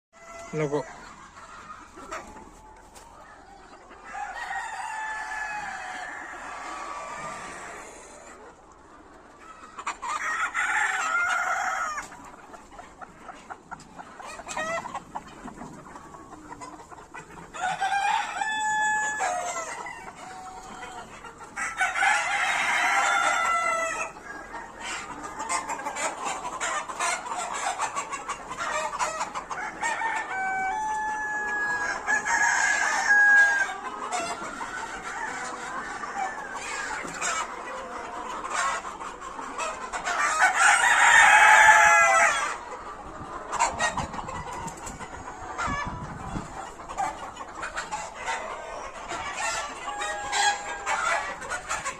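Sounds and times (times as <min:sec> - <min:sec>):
roosters crowing: 0:00.2 - 0:01.2, 0:04.0 - 0:08.3, 0:09.5 - 0:12.2, 0:17.4 - 0:27.7, 0:28.6 - 0:38.0, 0:39.5 - 0:42.6, 0:47.8 - 0:51.9
chickens clucking: 0:00.2 - 0:51.9.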